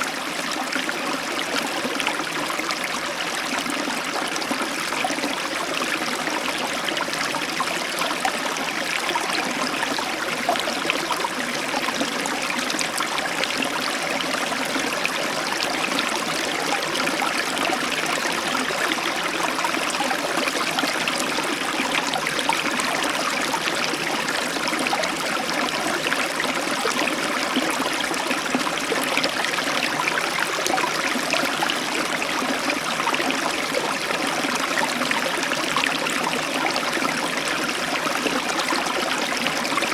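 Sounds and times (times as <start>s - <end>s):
river water flowing over stones: 0.0s - 39.9s.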